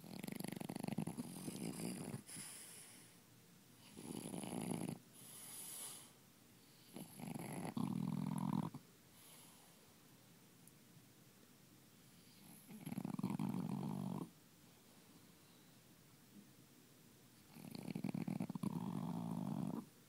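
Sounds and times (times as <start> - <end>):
dog snoring: 0.0 - 3.1, 3.8 - 6.1, 6.8 - 9.5, 12.2 - 14.3, 17.5 - 19.9
dog breathing: 0.2 - 3.2.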